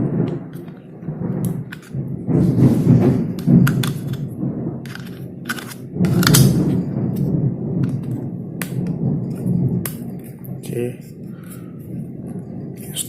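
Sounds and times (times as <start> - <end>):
low handling rumble: 0.0 - 13.0
plastic parts clicking and knocking: 0.3 - 0.9, 1.5 - 2.0, 3.4 - 6.8.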